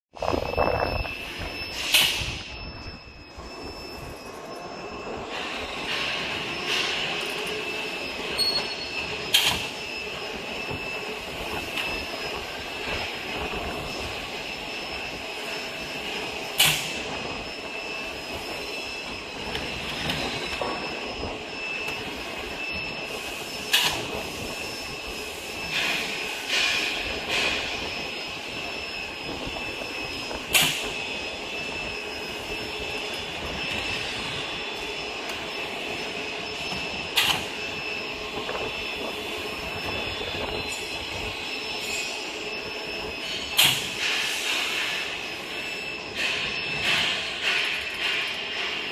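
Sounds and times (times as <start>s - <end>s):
machine humming and whining: 0.1s - 48.9s
sharp machine clack: 45.8s - 48.9s.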